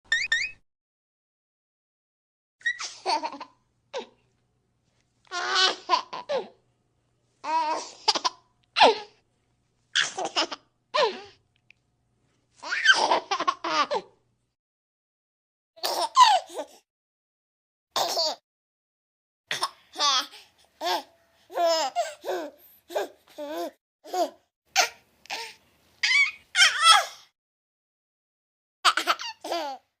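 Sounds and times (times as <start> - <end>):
baby giggling: 2.6 - 4.1, 28.9 - 29.8
baby laughing: 2.6 - 4.1, 5.3 - 6.6, 10.0 - 11.2, 12.6 - 14.1, 15.8 - 16.8, 19.5 - 27.1, 28.9 - 29.9.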